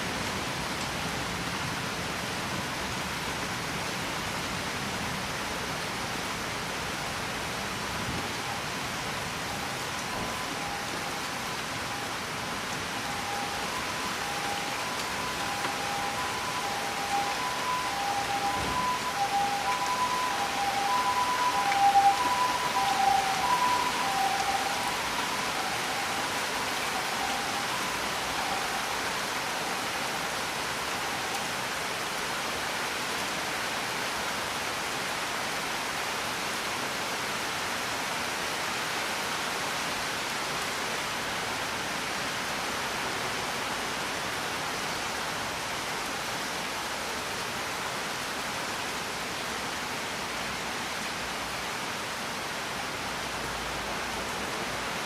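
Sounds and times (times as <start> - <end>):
steady rain: 0.0 - 55.0
faint steady tones: 8.4 - 31.4.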